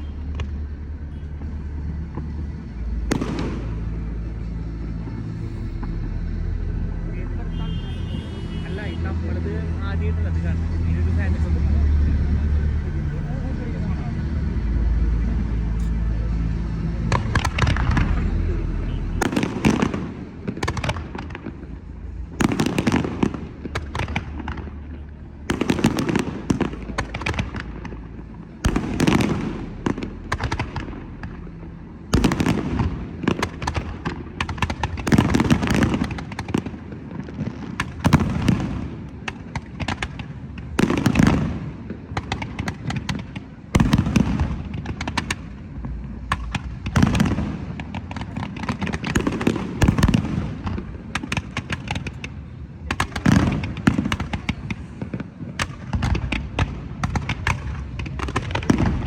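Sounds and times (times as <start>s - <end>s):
firework crackling: 0.0s - 10.3s, 17.0s - 59.0s.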